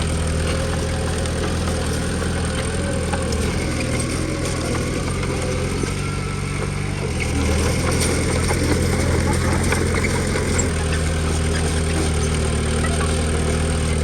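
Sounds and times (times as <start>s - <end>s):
bulldozer diesel engine running: 0.0s - 14.0s.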